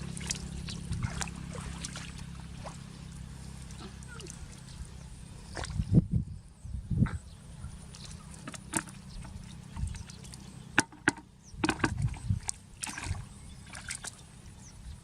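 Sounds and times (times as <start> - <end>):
knocks and splashes in water: 0.0 - 2.9, 7.9 - 14.3.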